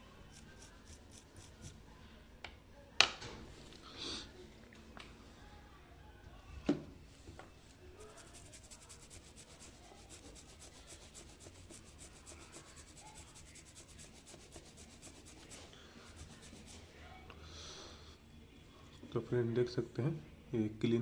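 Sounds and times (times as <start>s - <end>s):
fast rhythmic scrubbing: 8.0s - 16.8s.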